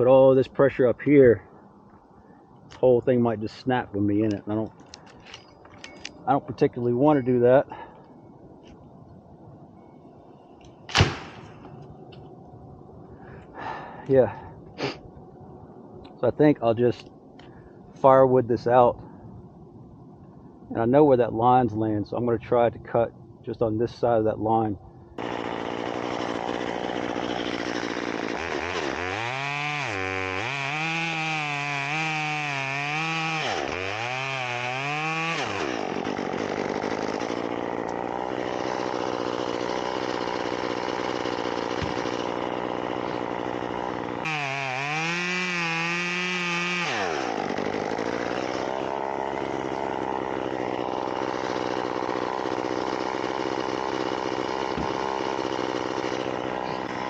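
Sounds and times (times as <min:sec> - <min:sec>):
chainsaw revving and cutting: 0:25.2 - 0:57.0.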